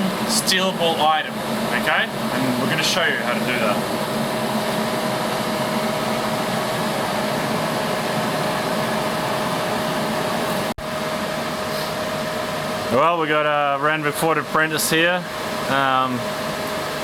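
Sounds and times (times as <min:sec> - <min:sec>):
forge air rushing: 0:00.0 - 0:17.0
thin steady whine: 0:00.0 - 0:17.0.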